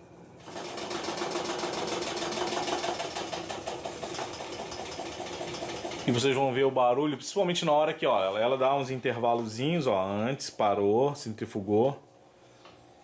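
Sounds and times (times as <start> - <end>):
washing machine spinning: 0.4 - 7.0.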